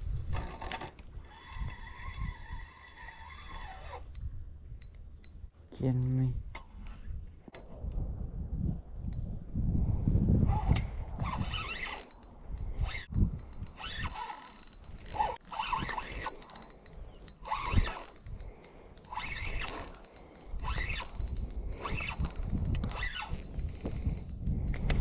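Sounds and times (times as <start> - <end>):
fishing reel clicking and rasping: 0.1 - 5.5, 11.1 - 25.0.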